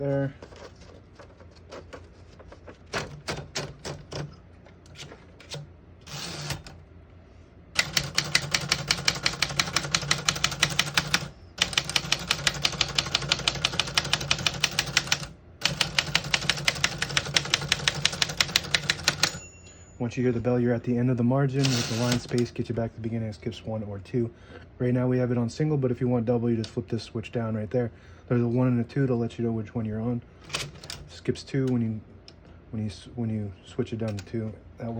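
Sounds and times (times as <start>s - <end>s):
typewriter rasp: 2.8s - 4.3s, 4.9s - 6.7s, 7.8s - 19.4s, 21.6s - 22.5s
typewriter typing: 2.8s - 4.4s, 5.5s - 6.8s, 7.8s - 19.4s, 21.6s - 22.5s.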